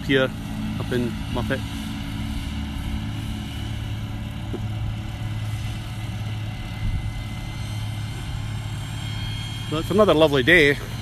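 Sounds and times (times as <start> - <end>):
tractor engine humming: 0.0 - 11.0.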